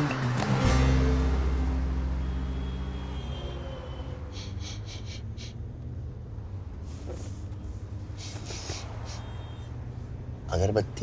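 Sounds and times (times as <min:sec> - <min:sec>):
person sniffing: 0:04.3 - 0:05.6, 0:08.2 - 0:09.4.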